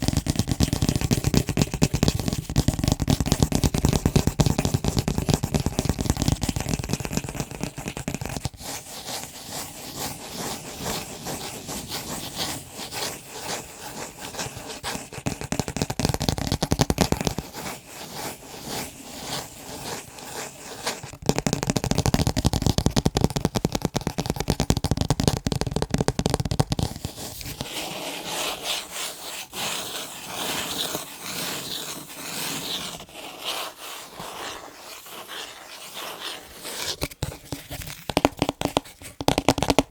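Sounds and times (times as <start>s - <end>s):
tapping and scratching on picture frames: 10.0s - 39.9s.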